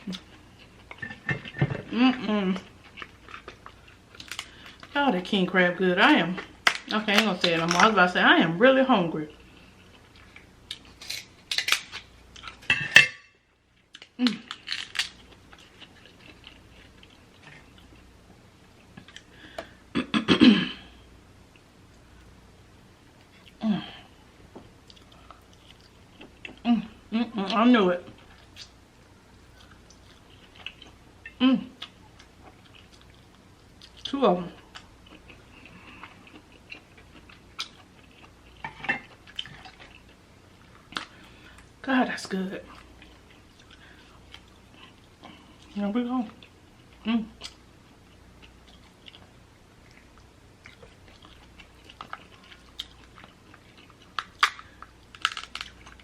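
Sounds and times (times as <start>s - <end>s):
person chewing: 24.8s - 26.7s, 28.1s - 41.7s, 42.7s - 45.8s, 46.4s - 56.0s
crab shell clicking and clattering: 54.2s - 55.8s.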